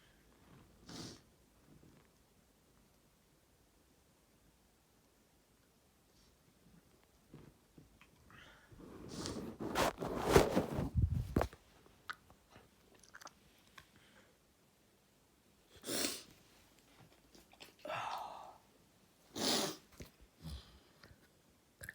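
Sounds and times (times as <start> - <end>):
person sneezing: 19.3 - 20.0.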